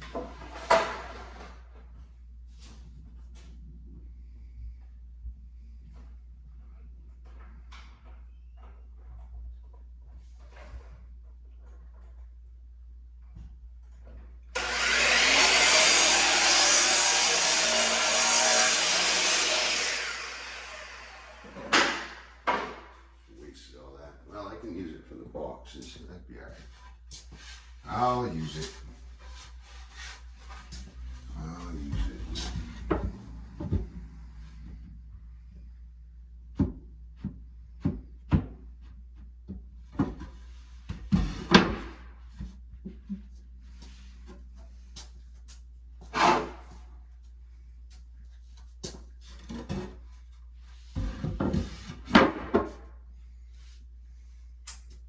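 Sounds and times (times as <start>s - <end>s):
power tool motor running: 14.6s - 22.2s.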